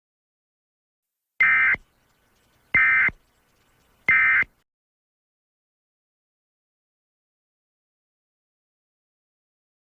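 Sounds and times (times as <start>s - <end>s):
short buzzing data bursts: 1.4s - 4.6s.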